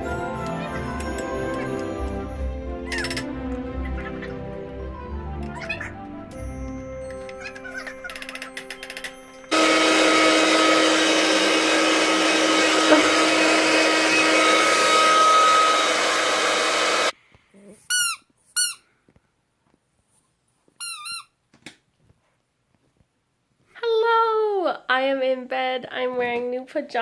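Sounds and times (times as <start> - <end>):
appliance motor whirring: 8.2 - 17.1.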